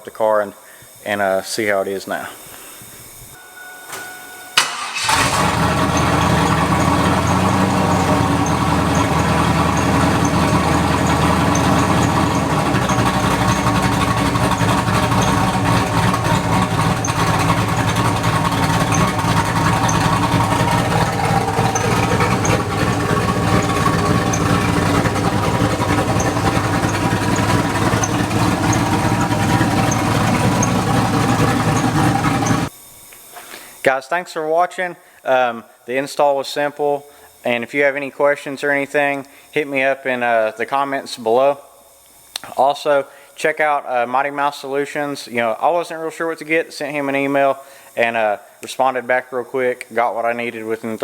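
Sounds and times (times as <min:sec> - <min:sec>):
car engine idling: 0:04.6 - 0:32.7
car engine starting: 0:04.6 - 0:32.7.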